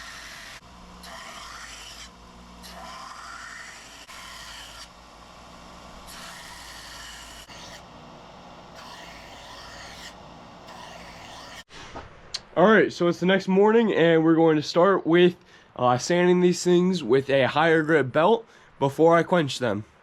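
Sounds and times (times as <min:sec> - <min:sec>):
belt grinder motor hum: 0:00.0 - 0:11.7
blade grinding on belt: 0:00.0 - 0:11.7.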